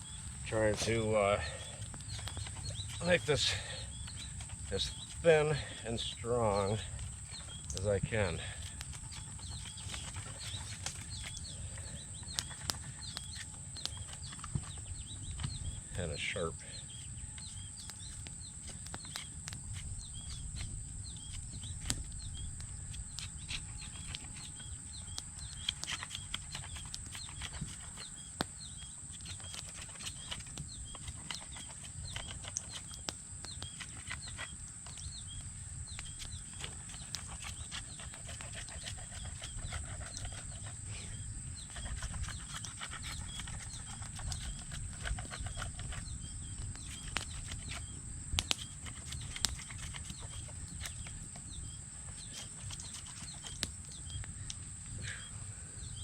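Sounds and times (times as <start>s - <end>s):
knife scraping wood: 0.8s - 15.2s, 19.0s - 33.0s, 33.6s - 34.6s, 36.0s - 51.2s, 52.1s - 53.6s.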